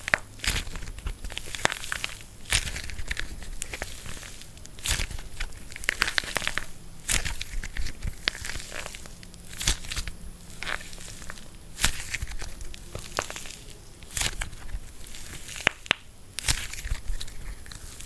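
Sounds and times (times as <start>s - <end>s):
clay crunching: 0.0s - 18.0s
dried clay crackling: 0.0s - 18.0s.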